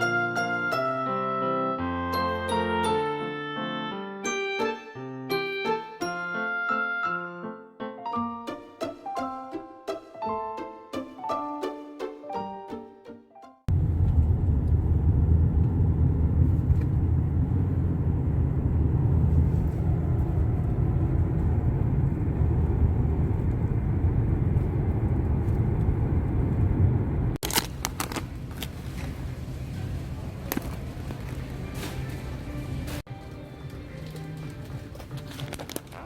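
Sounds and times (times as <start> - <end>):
steady low rumble: 13.7 - 27.4.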